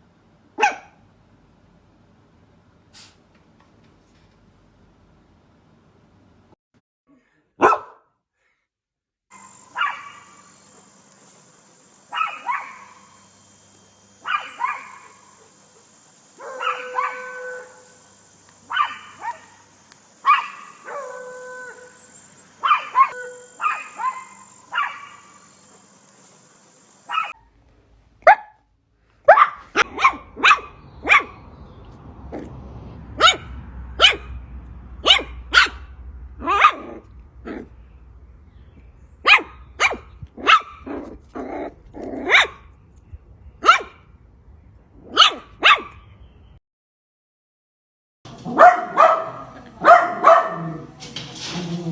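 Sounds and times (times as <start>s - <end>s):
dog barking: 0.6s - 1.0s, 7.6s - 8.1s, 9.7s - 10.4s, 12.1s - 13.1s, 14.2s - 17.9s, 18.7s - 19.6s, 20.2s - 22.0s, 22.6s - 25.4s, 27.1s - 27.4s, 28.2s - 28.6s, 29.2s - 31.4s, 33.2s - 34.4s, 35.0s - 37.7s, 39.2s - 41.2s, 42.2s - 42.6s, 43.6s - 44.0s, 45.1s - 46.0s, 48.3s - 51.9s
faint steady hiss: 9.3s - 28.2s.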